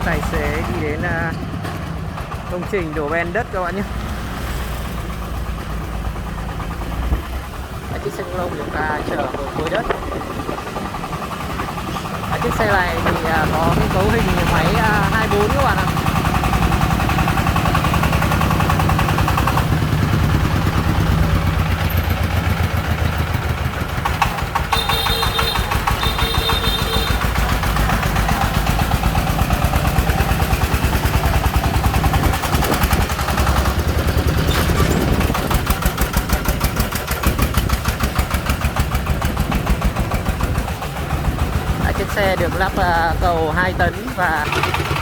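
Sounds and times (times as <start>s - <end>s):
diesel engine chugging: 0.0s - 45.0s.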